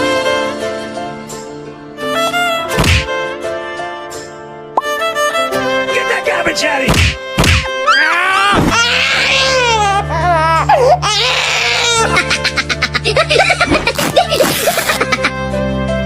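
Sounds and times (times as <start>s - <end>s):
background music: 0.0s - 16.0s
high-pitched wailing cries: 7.8s - 13.0s.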